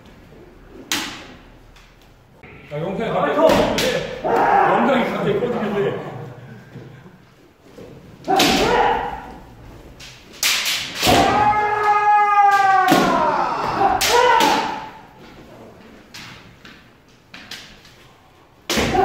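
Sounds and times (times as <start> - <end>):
people shouting cries: 4.1 - 5.2, 8.2 - 9.5, 11.0 - 15.2
bamboo sword strikes cracking: 8.3 - 8.9, 10.0 - 11.6, 13.9 - 14.9, 18.7 - 19.0.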